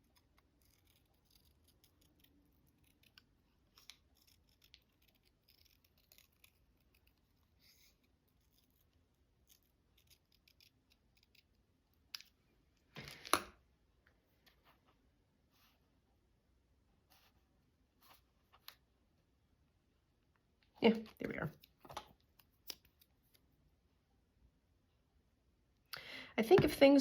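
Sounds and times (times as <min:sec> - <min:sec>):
scissors cutting paper: 0:00.0 - 0:11.6
paper handling clicks and scratches: 0:00.0 - 0:12.3.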